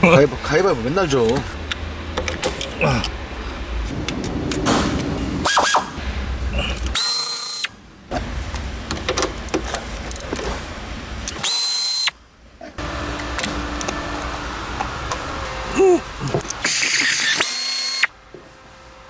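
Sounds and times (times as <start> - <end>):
power tool bursts: 5.4 - 6.0, 6.7 - 7.7, 11.3 - 12.1, 12.8 - 18.1
ratchet tool clicking: 11.2 - 12.1, 16.4 - 18.1.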